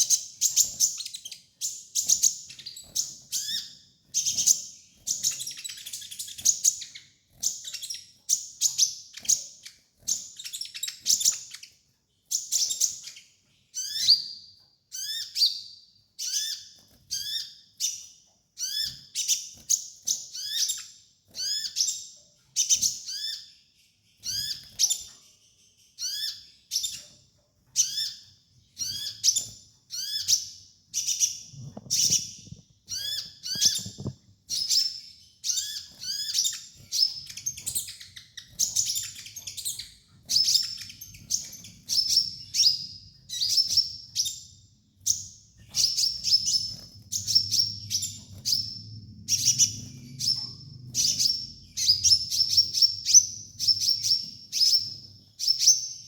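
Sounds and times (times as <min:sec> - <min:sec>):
bird chirping song: 0:00.0 - 0:56.0.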